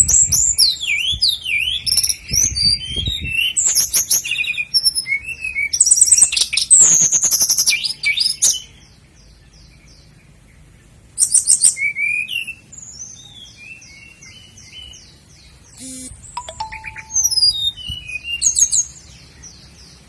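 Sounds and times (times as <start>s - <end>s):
songbird trills and chattering: 11.2s - 20.0s.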